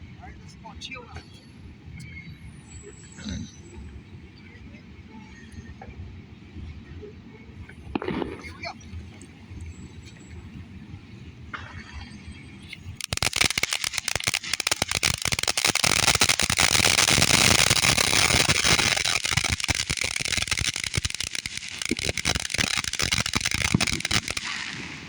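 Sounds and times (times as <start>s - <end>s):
firework fountain hissing and crackling: 7.5s - 25.0s.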